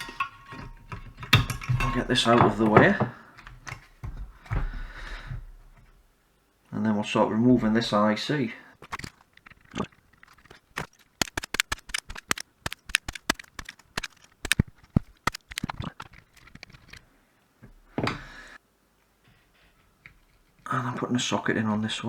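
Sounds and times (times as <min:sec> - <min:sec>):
tools clicking and scraping: 0:00.0 - 0:05.9, 0:08.8 - 0:17.1.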